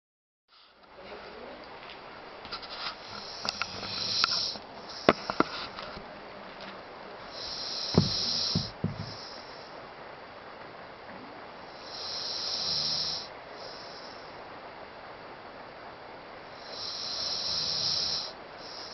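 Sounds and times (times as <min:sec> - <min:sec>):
dog snoring: 0:03.0 - 0:05.5, 0:07.3 - 0:09.7, 0:11.7 - 0:14.3, 0:16.5 - 0:18.9.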